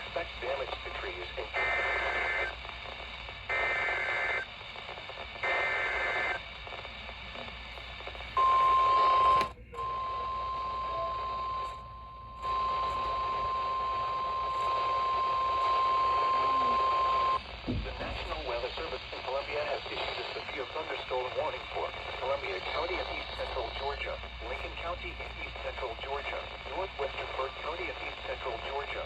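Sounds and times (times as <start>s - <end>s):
steady warning alarm tone: 8.3s - 18.6s.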